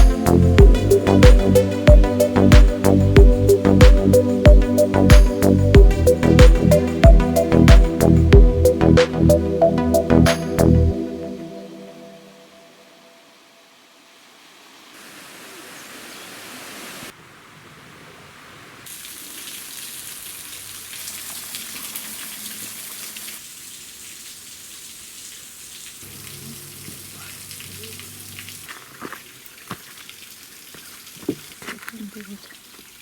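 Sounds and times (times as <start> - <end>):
waterfall rushing: 14.9 - 17.2.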